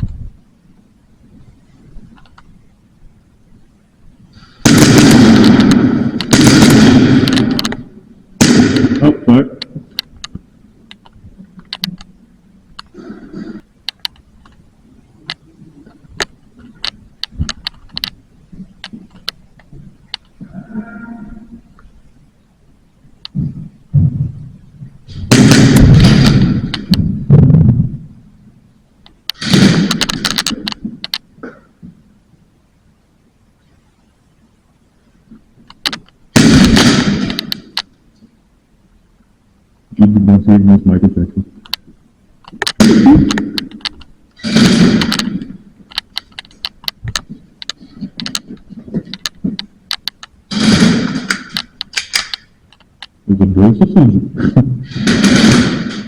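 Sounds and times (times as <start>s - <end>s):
single sharp gunshot cracks: 4.6s - 7.8s, 8.4s - 9.1s, 25.3s - 27.0s, 29.4s - 30.6s, 36.4s - 37.8s, 42.7s - 43.6s, 44.4s - 45.5s, 50.5s - 52.4s, 54.9s - 56.0s
rapid pistol fire volleys: 4.6s - 9.2s, 25.2s - 27.4s, 29.3s - 31.2s, 36.3s - 37.8s, 42.6s - 46.5s, 49.2s - 52.6s, 54.9s - 56.0s.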